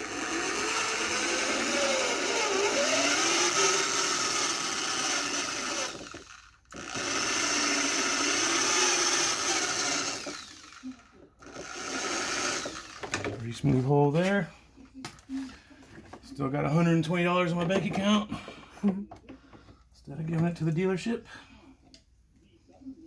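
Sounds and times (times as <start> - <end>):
power drill drilling: 0.0 - 13.3.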